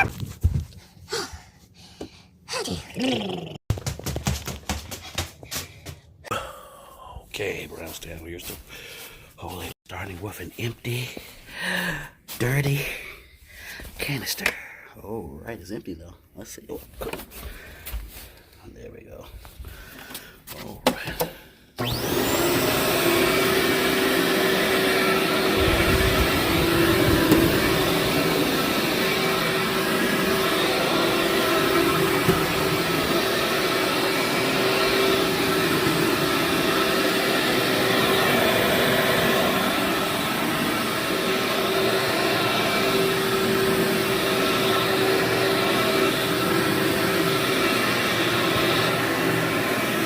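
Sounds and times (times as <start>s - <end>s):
vacuum cleaner running: 20.9s - 50.0s.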